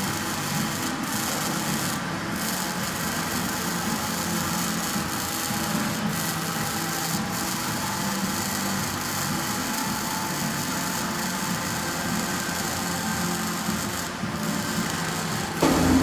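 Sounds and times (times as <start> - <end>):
welding arc crackling hiss: 0.0 - 16.0
low hum: 15.6 - 16.0.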